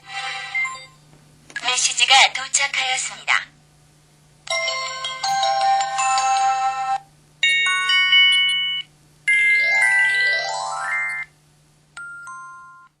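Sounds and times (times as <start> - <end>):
chime of held notes: 4.5 - 11.3.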